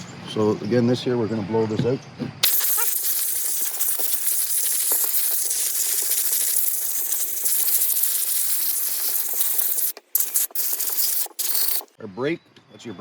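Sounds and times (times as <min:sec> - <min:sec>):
compressed air hissing: 0:02.4 - 0:12.0.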